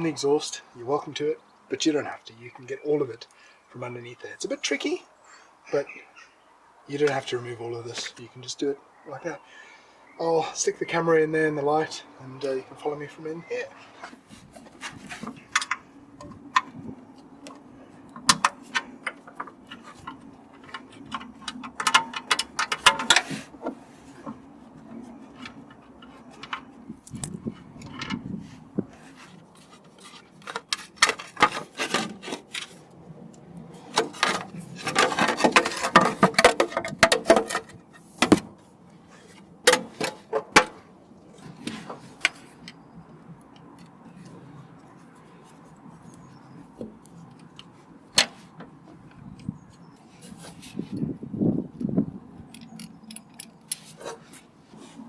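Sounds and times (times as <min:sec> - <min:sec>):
hand tools clicking on metal: 0:18.3 - 0:23.3, 0:52.4 - 0:54.0.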